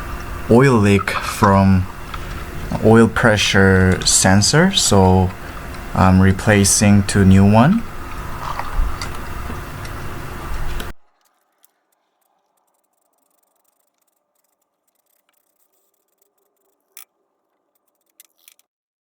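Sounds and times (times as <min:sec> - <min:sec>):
noise: 0:00.0 - 0:18.6
faint clicks: 0:10.7 - 0:18.6.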